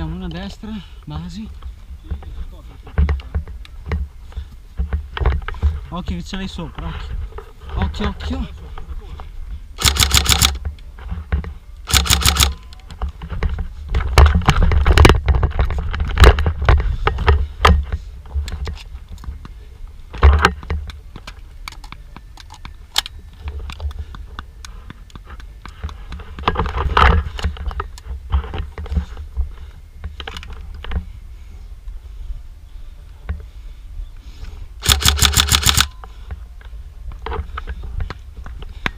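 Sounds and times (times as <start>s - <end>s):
airsoft guns firing: 9.8s - 10.6s, 11.9s - 12.6s, 34.8s - 35.9s
gun clicks: 9.8s - 10.6s, 11.8s - 12.9s, 21.2s - 23.9s, 34.8s - 36.0s.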